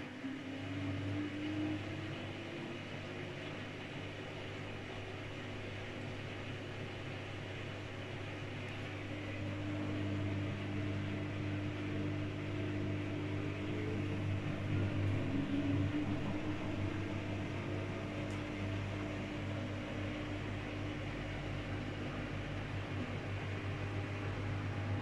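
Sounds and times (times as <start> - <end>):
washing machine spinning: 0.0 - 25.0.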